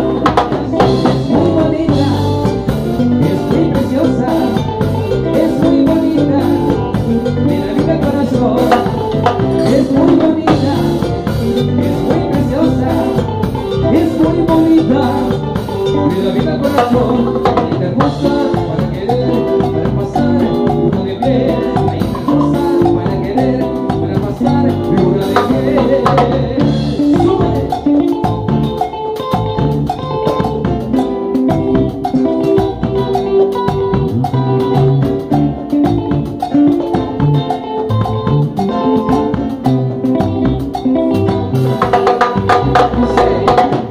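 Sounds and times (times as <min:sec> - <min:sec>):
drums and percussion beat: 0:00.0 - 0:43.9
salsa band playing: 0:00.0 - 0:43.9.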